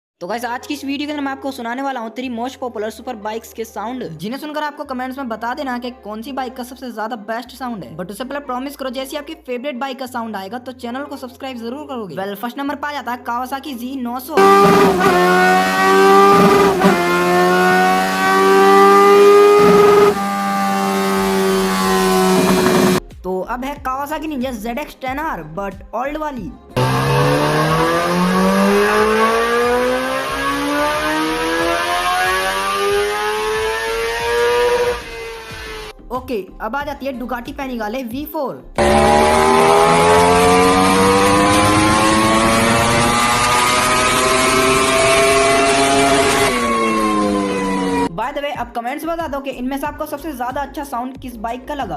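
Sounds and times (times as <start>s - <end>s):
motorcycle engine revving high: 14.4s - 23.0s, 26.8s - 35.9s, 38.8s - 48.1s.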